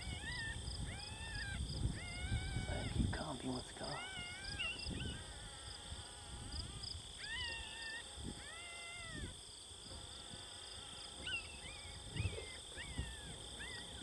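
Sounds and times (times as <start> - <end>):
electronic coyote pup yelps: 0.0 - 3.0, 4.0 - 5.2, 7.2 - 9.3, 11.2 - 14.0.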